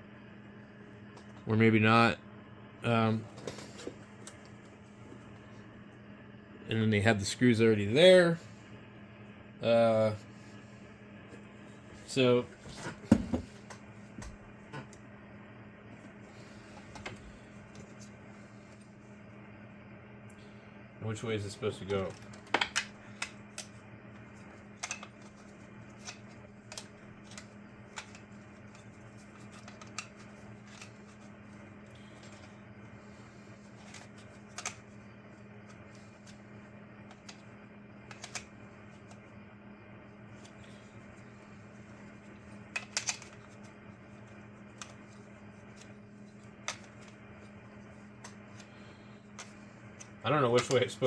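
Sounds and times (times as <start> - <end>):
faint low hum: 0.0 - 51.0
small parts clicking and tapping: 24.8 - 31.2, 33.7 - 34.9, 38.0 - 39.2, 42.7 - 43.6.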